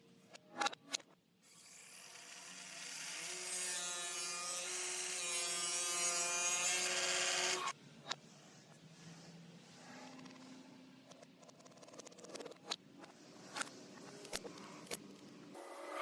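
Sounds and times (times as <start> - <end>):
power tool cutting wood: 1.5 - 7.7.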